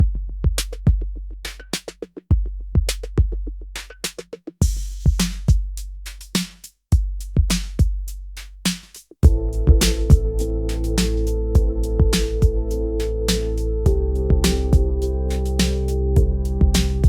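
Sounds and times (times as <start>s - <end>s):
electronic trance music: 9.2s - 17.0s.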